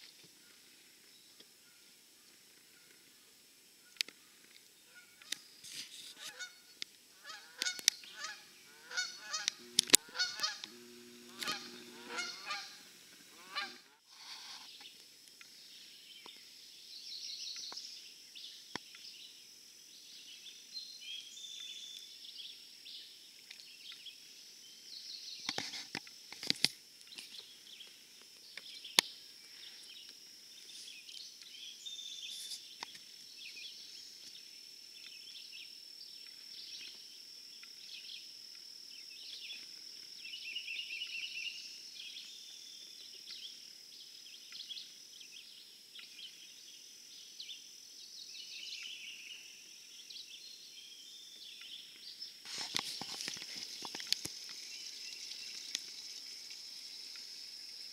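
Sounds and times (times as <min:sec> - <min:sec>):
steady high-pitched whine: 0:01.6 - 0:16.8
flock of birds calling: 0:06.0 - 0:06.6, 0:07.2 - 0:14.0
bird chirps: 0:06.2 - 0:13.9
sharp clicks: 0:09.4 - 0:12.6.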